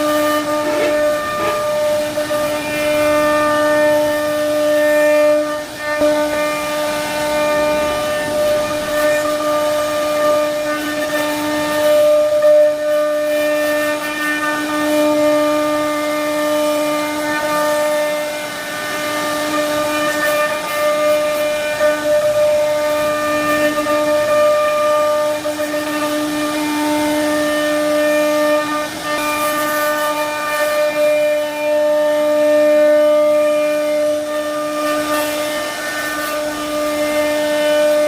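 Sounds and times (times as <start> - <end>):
hiss of wood cutting: 0.0 - 38.0
router spindle whine: 0.0 - 38.0.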